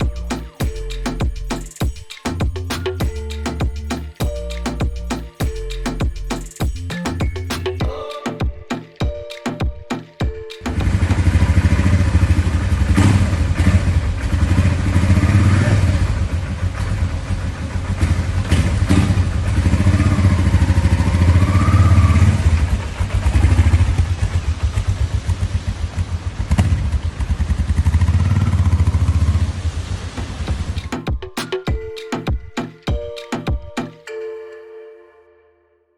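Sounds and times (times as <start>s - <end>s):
motorcycle engine revving: 10.8s - 30.6s.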